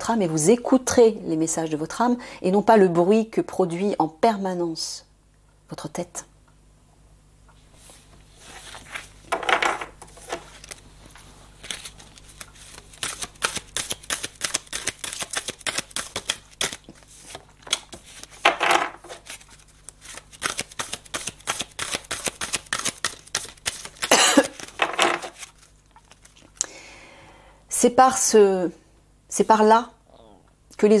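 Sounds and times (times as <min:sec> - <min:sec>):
cards shuffling: 0:08.4 - 0:26.6.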